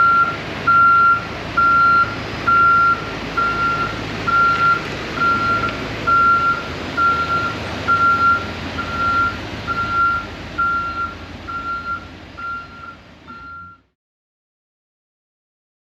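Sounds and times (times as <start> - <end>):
reverse alarm beeping: 0.0 - 13.9
bus engine running low: 0.0 - 14.0.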